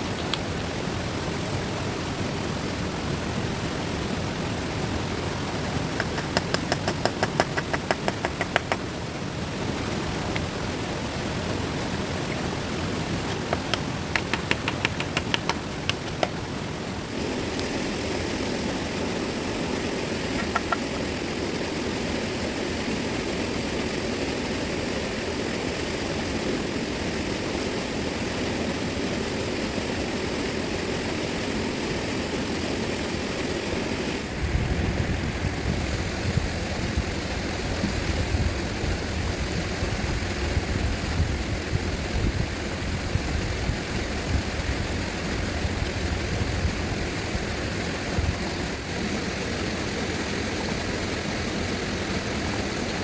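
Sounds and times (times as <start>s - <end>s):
fast-flowing river rushing: 0.0s - 53.0s
rapid sharp taps: 5.6s - 8.9s, 13.3s - 16.4s.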